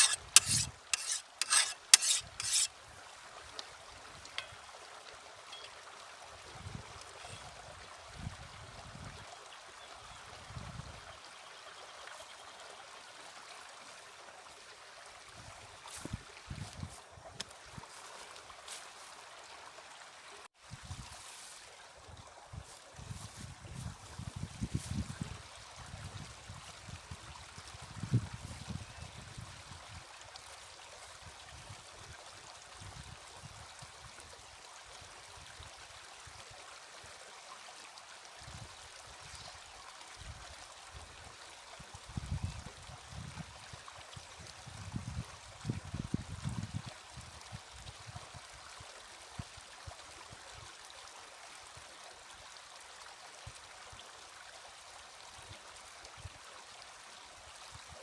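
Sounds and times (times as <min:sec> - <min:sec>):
flowing water rushing: 0:00.0 - 0:23.0, 0:25.2 - 0:44.8.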